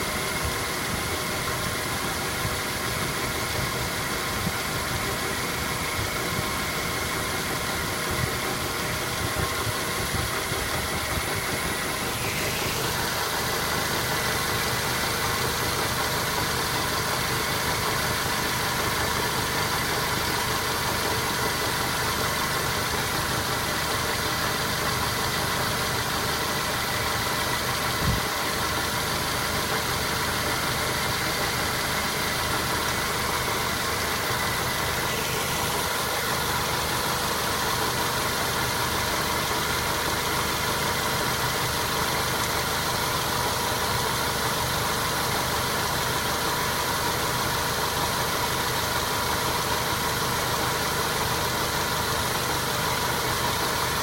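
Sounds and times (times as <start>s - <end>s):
car engine running: 0.0s - 54.0s.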